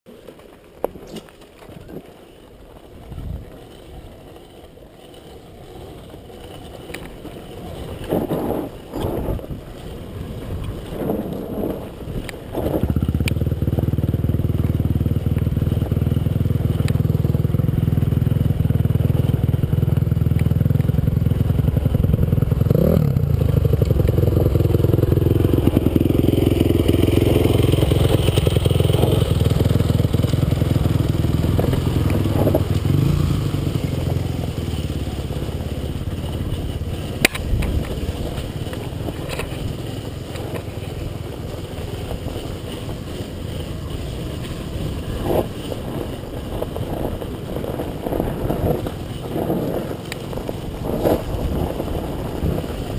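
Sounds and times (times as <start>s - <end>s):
motorcycle engines rumbling: 5.9s - 52.9s.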